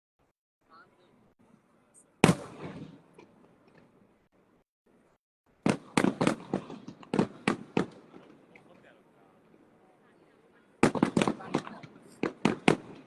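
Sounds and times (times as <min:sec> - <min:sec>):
firework bang: 0:02.2 - 0:03.1, 0:05.6 - 0:08.5, 0:10.8 - 0:13.0
firework cracks: 0:02.2 - 0:03.8, 0:05.6 - 0:08.9, 0:10.8 - 0:13.0.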